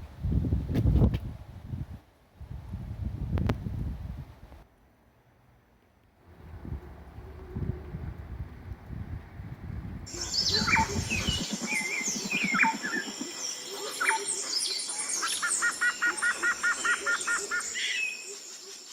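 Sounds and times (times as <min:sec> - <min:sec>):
wind rumbling on microphone: 0:00.0 - 0:04.6, 0:06.2 - 0:13.3
birds singing and chirping: 0:10.1 - 0:18.9.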